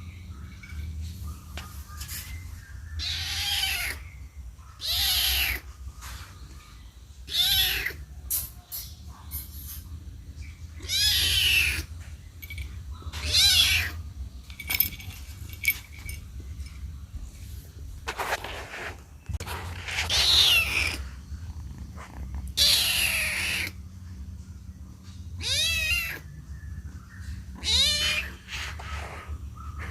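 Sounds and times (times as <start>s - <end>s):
kitten meowing: 20.1s - 21.1s, 22.6s - 23.8s, 25.4s - 26.2s, 27.6s - 28.4s.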